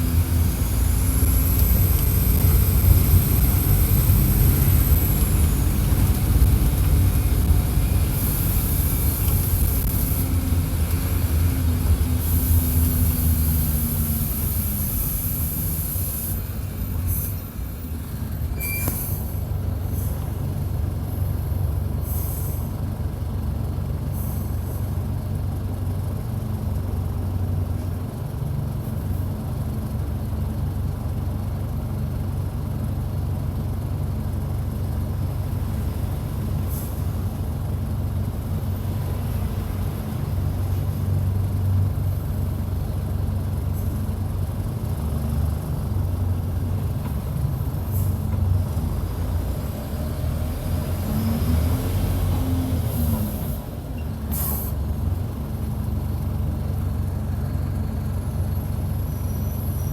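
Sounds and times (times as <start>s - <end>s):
bus diesel engine: 0.0s - 59.9s
brief high squeal: 18.4s - 19.4s, 59.0s - 59.9s
short air hisses: 22.0s - 22.7s, 54.3s - 54.8s.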